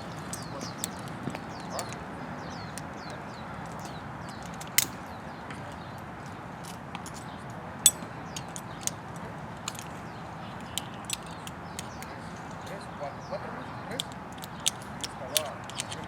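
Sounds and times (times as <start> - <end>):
metal climbing hardware clinking: 0.2 - 2.0, 2.8 - 5.2, 6.6 - 12.8, 13.9 - 16.0.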